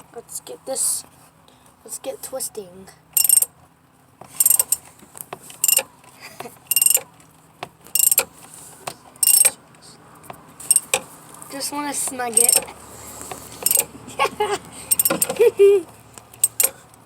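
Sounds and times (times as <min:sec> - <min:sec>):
ratchet wrench clicking: 0:03.2 - 0:03.5, 0:04.4 - 0:04.9, 0:05.6 - 0:05.8, 0:06.7 - 0:07.0, 0:07.9 - 0:08.3, 0:09.2 - 0:09.5, 0:10.6 - 0:11.1, 0:12.4 - 0:12.7, 0:13.6 - 0:13.9, 0:14.9 - 0:15.4, 0:16.3 - 0:16.8.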